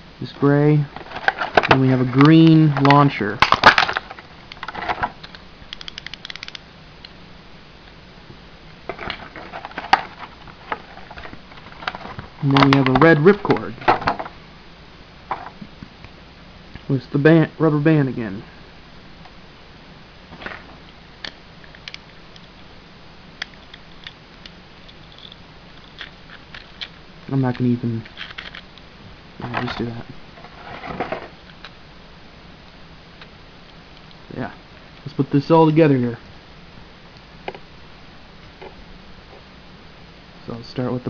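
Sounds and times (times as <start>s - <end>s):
plastic handling noise: 0.9s - 6.5s, 8.9s - 14.4s, 24.9s - 28.7s, 29.4s - 31.8s
plastic parts clicking: 2.7s - 7.2s, 21.2s - 22.5s, 23.4s - 28.6s.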